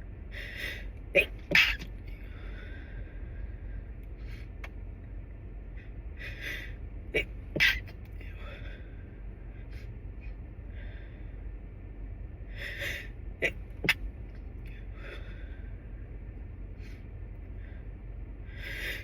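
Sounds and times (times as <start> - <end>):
man's stifled sneezes: 1.2 - 1.9, 7.2 - 7.9
quiet breaths: 2.1 - 4.8, 8.2 - 13.2, 14.6 - 19.0
gasping inhale: 18.5 - 19.0.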